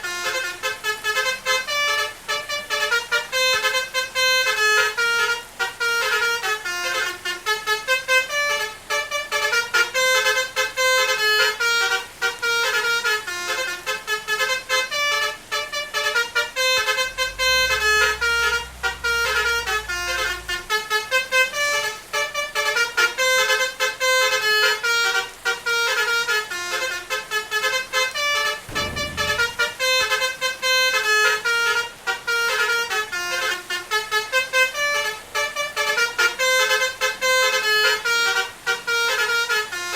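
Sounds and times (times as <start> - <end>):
multi-tone bus horn melody: 0.0 - 39.9
low thump: 17.0 - 20.7, 28.6 - 30.1
low rumble: 17.0 - 21.2, 28.6 - 30.2.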